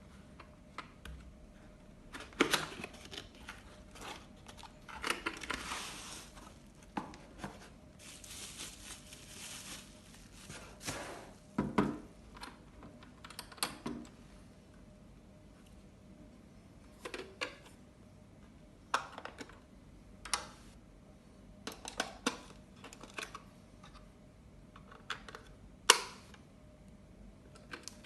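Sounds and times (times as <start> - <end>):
packaging rustling and crinkling: 2.6 - 11.4.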